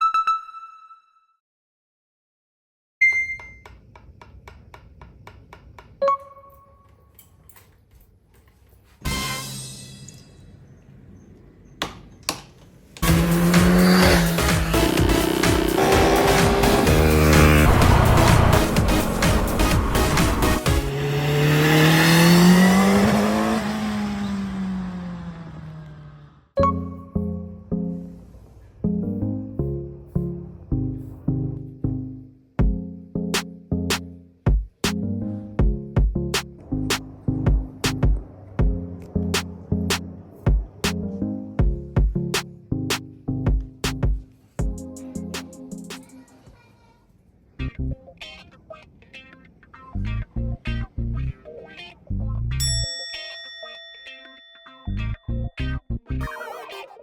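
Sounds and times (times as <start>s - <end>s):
music with a beat: 13.0s - 20.9s, 32.6s - 35.0s, 35.6s - 38.8s, 39.4s - 41.0s, 41.6s - 46.1s
vehicle engine droning past: 13.0s - 26.5s, 36.6s - 40.5s
ringing ping: 52.6s - 55.4s.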